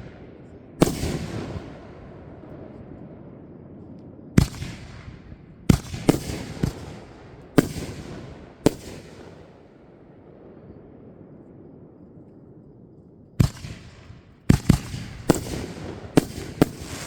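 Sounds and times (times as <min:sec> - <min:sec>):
fireworks bangs with rumbling echo: 0:00.0 - 0:12.0, 0:13.4 - 0:17.0.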